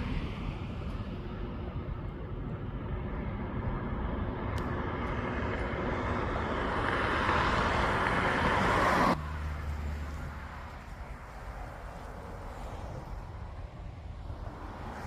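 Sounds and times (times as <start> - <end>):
road traffic noise: 0.0 - 15.0.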